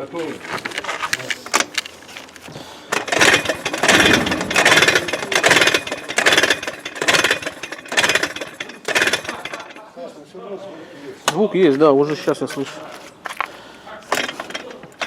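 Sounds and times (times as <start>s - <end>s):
rattling engine knock: 2.9s - 9.8s
scooter engine revving: 3.0s - 9.6s.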